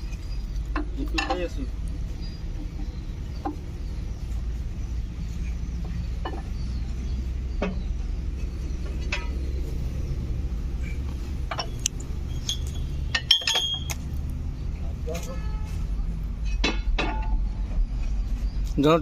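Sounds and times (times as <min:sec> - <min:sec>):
engine droning: 0:00.0 - 0:19.0
metallic clinks and taps: 0:00.1 - 0:01.6, 0:11.4 - 0:14.0.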